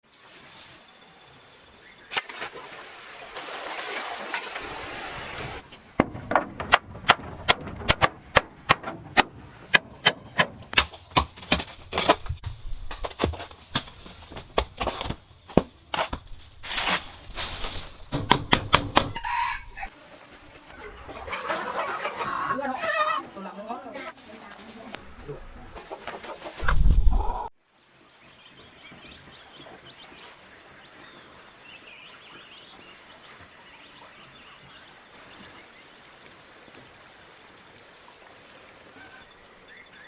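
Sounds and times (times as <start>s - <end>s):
sharp knocks: 5.7s - 19.9s
chickens clucking: 16.0s - 19.9s, 20.5s - 27.5s.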